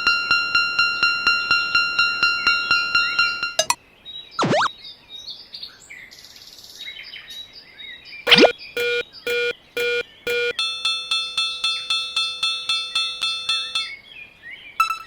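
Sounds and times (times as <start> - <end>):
faint chirps: 8.3 - 10.6
railroad crossing bell dinging: 8.8 - 14.0.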